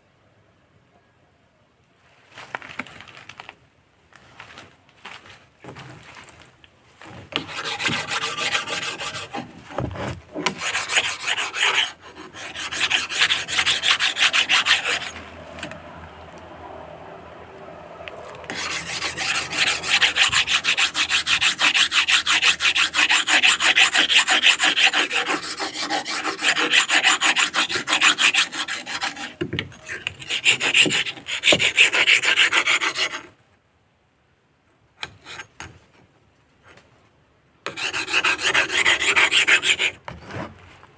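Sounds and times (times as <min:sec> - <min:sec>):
blade scraping on sharpener: 0:07.4 - 0:09.5, 0:10.3 - 0:15.7, 0:18.5 - 0:33.3, 0:37.7 - 0:40.0.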